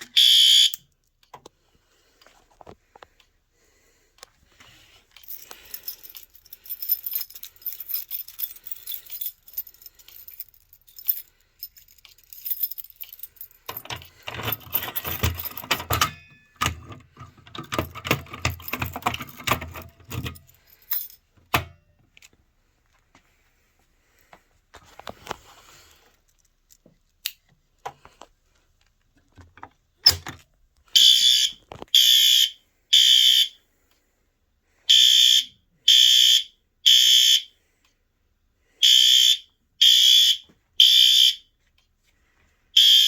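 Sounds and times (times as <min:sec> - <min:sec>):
keys jangling: 0:05.0 - 0:21.3.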